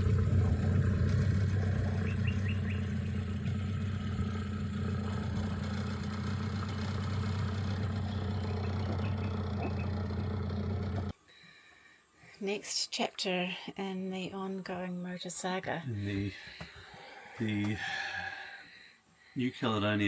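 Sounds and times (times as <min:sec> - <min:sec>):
outboard motor humming: 0:00.0 - 0:11.1.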